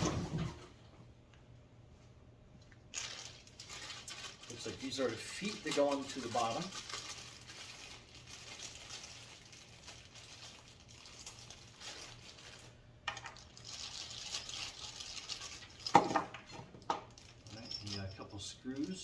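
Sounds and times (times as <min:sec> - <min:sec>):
plastic packaging crinkling: 0:02.9 - 0:16.0.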